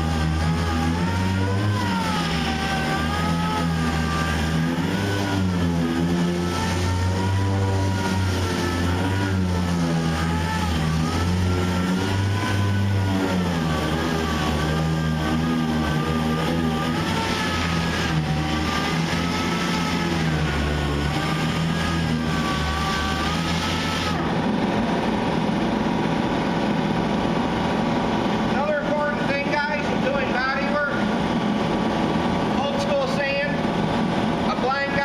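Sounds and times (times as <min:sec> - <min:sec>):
power sander motor whine: 0:00.0 - 0:35.0.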